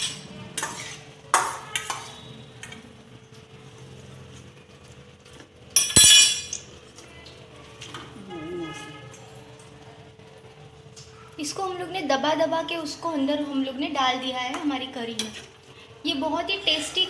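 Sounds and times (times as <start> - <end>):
metal utensils and pots clinking: 0.0 - 3.6, 4.3 - 6.8, 14.5 - 15.7.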